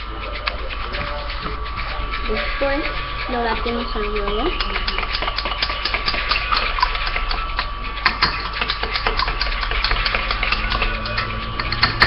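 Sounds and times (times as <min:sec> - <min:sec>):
spoon clinking in a cup: 0:08.1 - 0:12.0.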